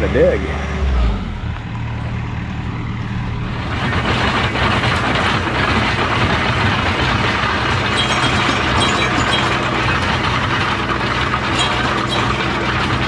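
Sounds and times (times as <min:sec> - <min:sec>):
digging machine engine under load: 0:00.0 - 0:13.0
harsh digging noise: 0:03.1 - 0:13.0.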